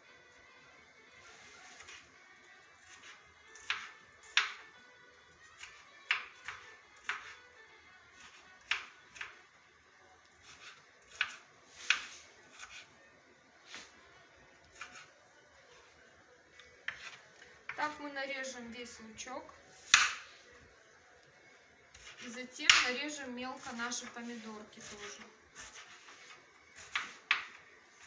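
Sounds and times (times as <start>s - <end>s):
faint background music: 0.0s - 28.0s
knife chopping on cutting board: 2.8s - 4.7s, 5.6s - 7.4s, 8.2s - 9.4s, 10.4s - 12.9s, 14.7s - 15.1s, 16.9s - 17.2s, 19.8s - 20.3s, 21.9s - 23.0s, 23.6s - 27.6s.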